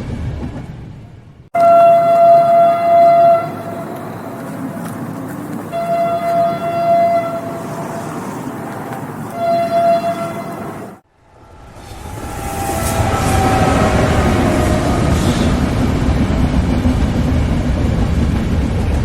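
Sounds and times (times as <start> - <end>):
passing train rumble: 0.0 - 19.0
train horn blasts: 1.6 - 4.8, 5.6 - 7.9, 9.3 - 15.6.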